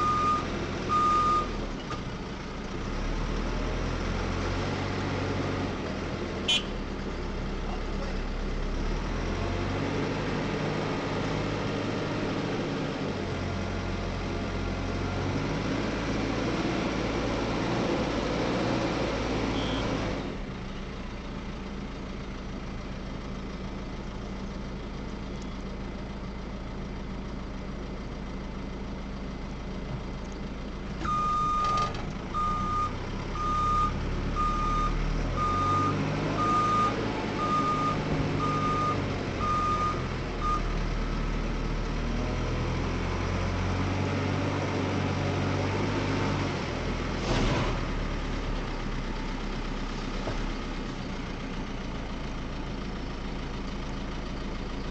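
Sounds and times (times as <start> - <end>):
reversing alarm beeping: 0.0 - 1.6, 31.1 - 31.8, 32.4 - 40.7
diesel engine revving: 0.0 - 20.6, 30.9 - 54.9.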